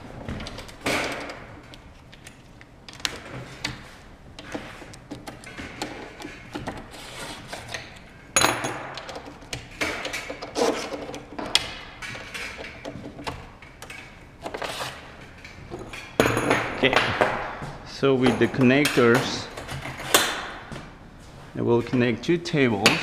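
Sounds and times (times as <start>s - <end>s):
metal parts clinking and scraping: 4.5s - 16.8s.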